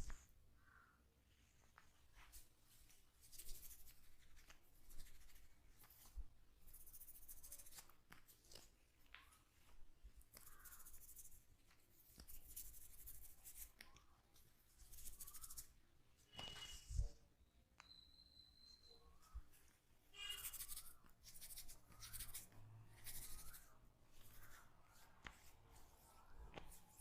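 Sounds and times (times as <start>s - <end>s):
hands rubbing oiled hair: 10.3s - 15.7s, 20.4s - 27.0s.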